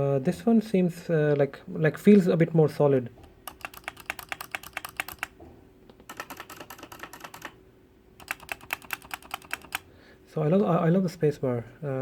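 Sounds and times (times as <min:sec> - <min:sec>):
mechanical keyboard typing: 0:03.4 - 0:05.4, 0:06.0 - 0:07.6, 0:08.2 - 0:09.9.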